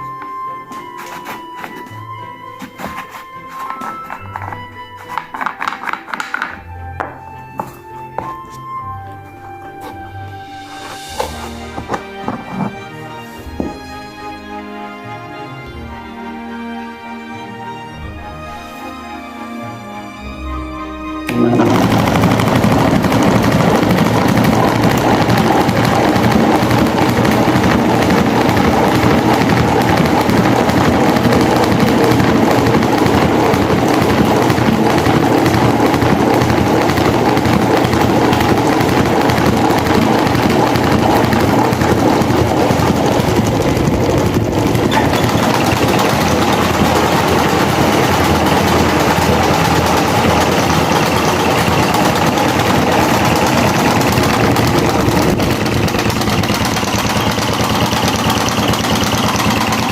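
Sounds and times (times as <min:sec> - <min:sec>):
electric fan rattling: 0:21.3 - 0:59.9.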